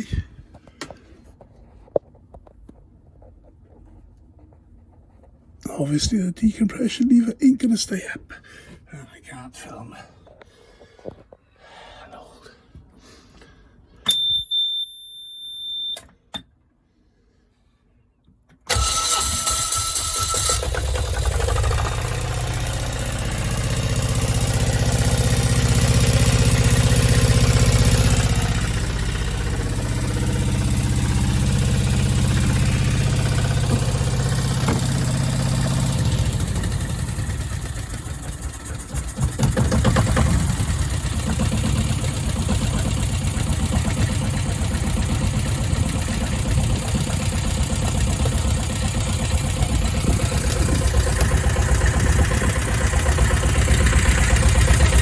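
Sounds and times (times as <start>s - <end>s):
diesel engine cranking on starter: 18.7s - 55.0s.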